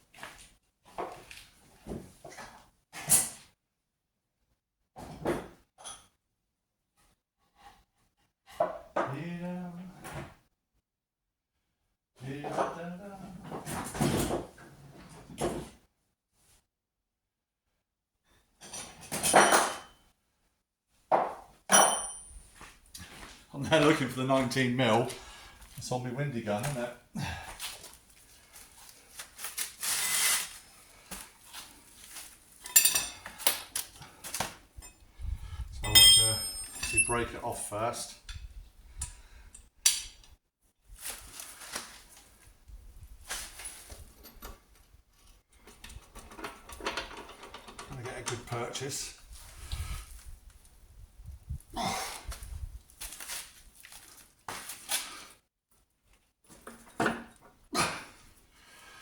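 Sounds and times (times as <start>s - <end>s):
metal tools clinking and rattling: 21.7s - 22.4s, 32.6s - 34.0s, 35.8s - 37.5s
man breathing and grunting: 27.0s - 27.9s, 51.6s - 52.5s, 57.7s - 59.0s
scraping rub: 29.3s - 30.8s.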